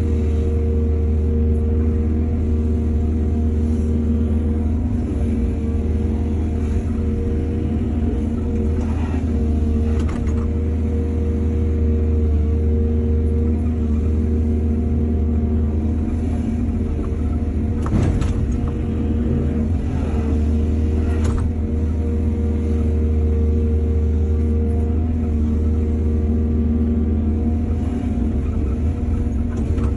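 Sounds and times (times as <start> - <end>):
diesel engine running: 0.0 - 29.9.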